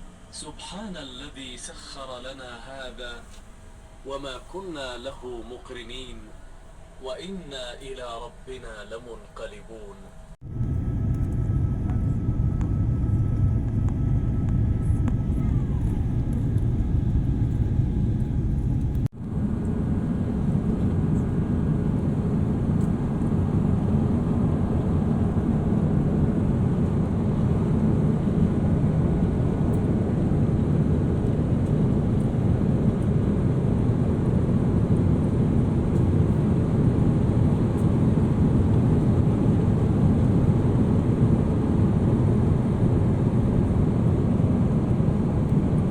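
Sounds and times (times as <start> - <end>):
airliner cabin engine rumble: 10.3 - 45.9.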